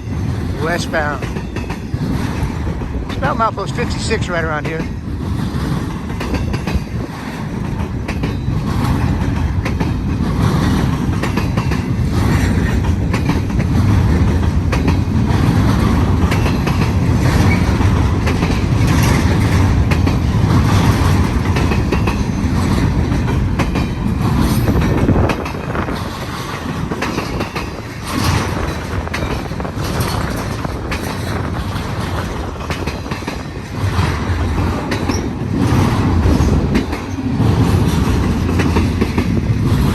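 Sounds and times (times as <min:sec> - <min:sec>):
freight train passing: 0:00.0 - 0:39.9
wheels clickety-clack on rail: 0:00.0 - 0:39.9.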